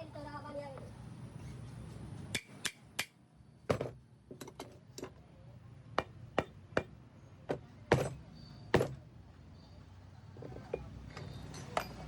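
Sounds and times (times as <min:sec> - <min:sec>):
metal tools tapping and knocking: 0:03.7 - 0:05.2, 0:06.0 - 0:09.0, 0:10.3 - 0:12.0.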